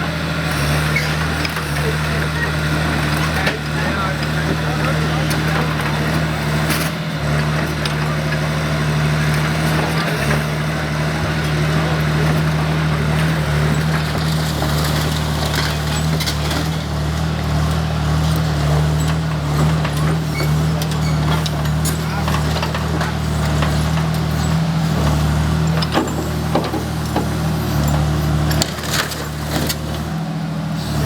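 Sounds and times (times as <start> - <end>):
excavator diesel engine running: 0.0 - 31.0.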